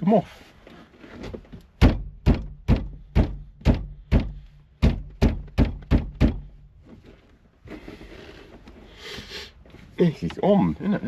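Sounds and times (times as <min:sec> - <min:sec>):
heavy thunks: 0:01.1 - 0:07.8.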